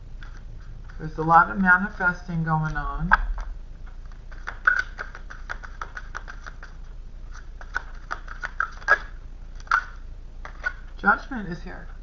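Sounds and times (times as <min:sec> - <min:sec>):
cards clicking and snapping: 0:03.1 - 0:06.7, 0:07.3 - 0:10.8.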